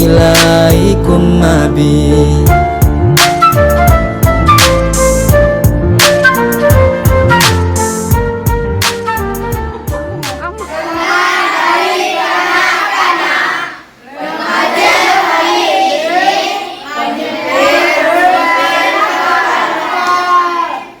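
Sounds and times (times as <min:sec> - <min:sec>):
children singing together: 0:10.6 - 0:21.0.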